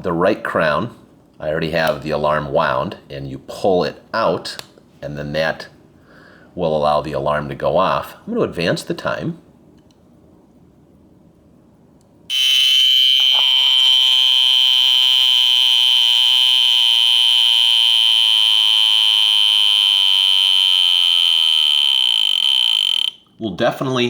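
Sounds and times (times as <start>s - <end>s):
alarm clock ringing: 12.3s - 23.2s.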